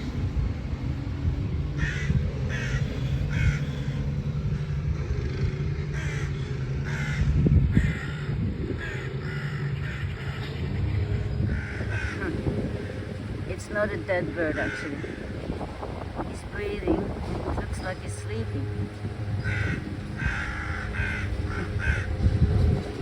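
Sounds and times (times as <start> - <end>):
steady low rumble: 0.0 - 23.0
crows cawing: 1.8 - 4.7, 5.3 - 10.6, 11.2 - 13.2, 14.0 - 16.2, 18.6 - 22.8.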